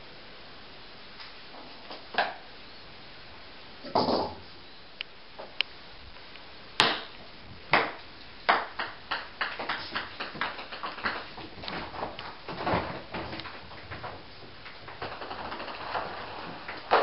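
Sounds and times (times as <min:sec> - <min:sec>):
ping-pong ball bouncing on floor: 0:07.7 - 0:11.2.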